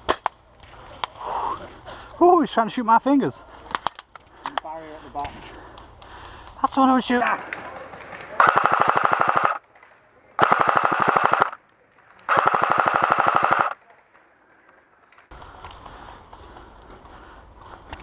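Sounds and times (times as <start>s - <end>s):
airsoft rifle full-auto bursts: 8.4s - 9.6s, 10.4s - 11.6s, 12.3s - 13.8s.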